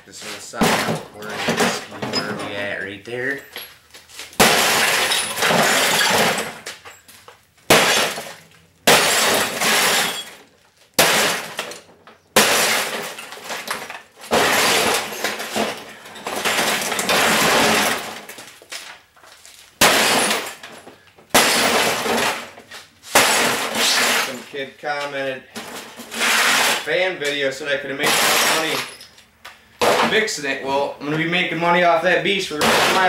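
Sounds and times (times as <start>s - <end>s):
glass shattering and falling: 0.6s - 19.0s, 19.8s - 24.5s, 25.6s - 26.9s, 28.0s - 29.2s, 29.8s - 30.4s, 32.5s - 33.0s.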